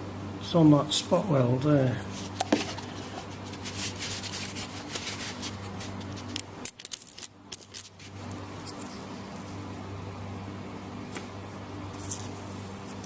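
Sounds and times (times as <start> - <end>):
steady low hum: 0.0 - 13.0
scratching and rubbing: 2.1 - 6.4.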